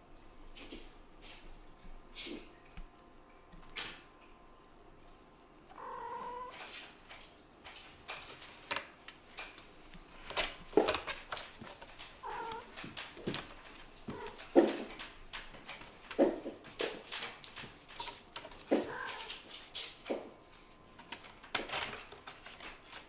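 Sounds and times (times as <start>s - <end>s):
kittens scuffling and thumping: 6.2s - 23.0s
kitten calling: 12.2s - 12.7s.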